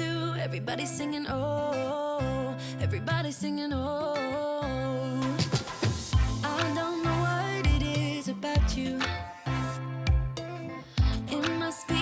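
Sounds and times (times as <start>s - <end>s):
pop music backing: 0.0s - 12.0s
drum beat: 5.4s - 7.0s, 7.6s - 9.1s, 10.1s - 11.6s.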